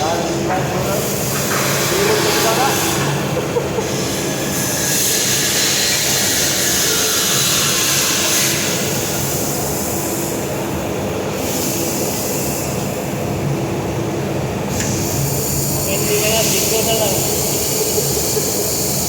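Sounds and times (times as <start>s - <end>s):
mechanical hum: 0.0s - 19.0s.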